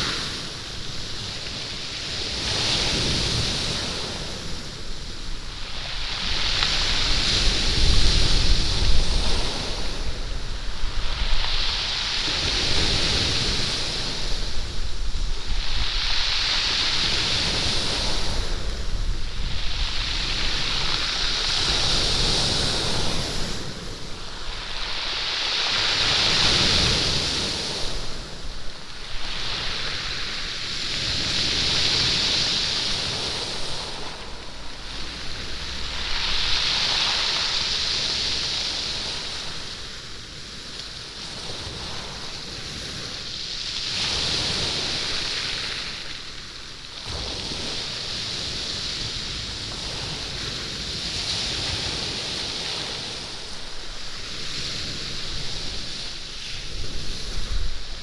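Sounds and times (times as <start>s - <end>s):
stones rattling in surf: 0.0s - 50.1s
waves washing over pebbles: 0.0s - 58.0s.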